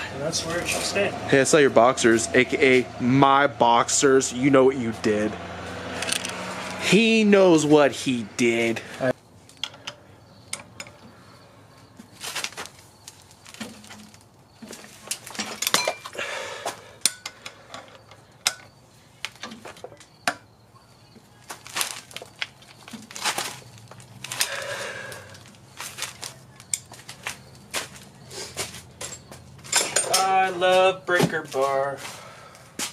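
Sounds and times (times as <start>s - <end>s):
metal tools clinking and knocking: 6.0s - 6.8s, 9.5s - 11.1s, 13.4s - 16.2s, 17.0s - 20.5s, 25.4s - 27.3s, 28.6s - 30.9s.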